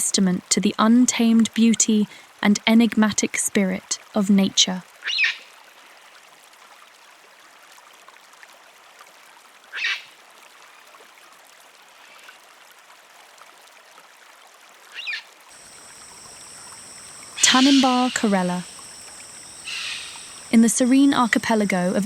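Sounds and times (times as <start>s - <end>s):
shrill bird calls: 15.0s - 21.4s
faint steady hiss: 15.5s - 22.0s.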